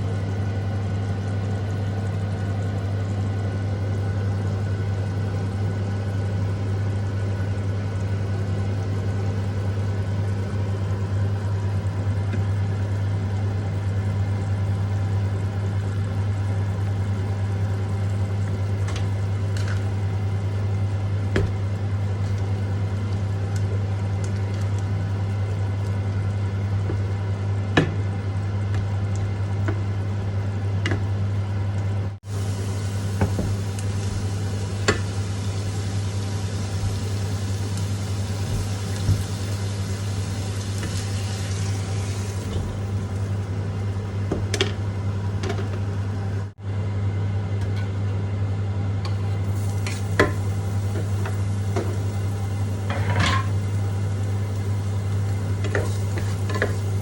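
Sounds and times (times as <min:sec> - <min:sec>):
food sizzling in a pan: 0:32.2 - 0:43.9, 0:49.1 - 0:57.0.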